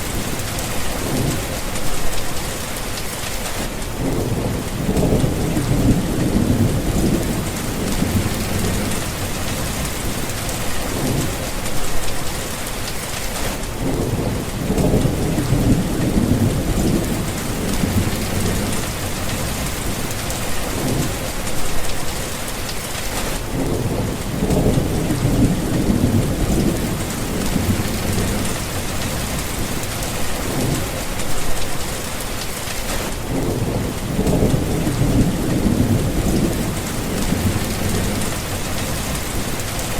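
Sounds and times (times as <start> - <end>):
steady rain falling: 0.0 - 39.9
rolling thunder: 4.0 - 11.7, 13.8 - 21.4, 23.5 - 31.5, 33.2 - 39.9.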